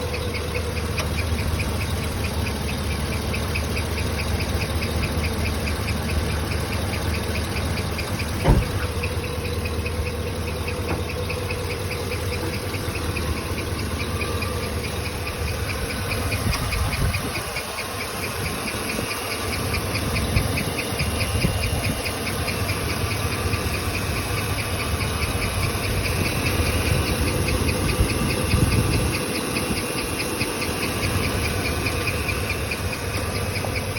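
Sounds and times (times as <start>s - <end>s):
pickup engine idling: 0.0s - 33.9s
rapid chirping tick: 0.0s - 33.9s
loud thump: 8.4s - 8.9s.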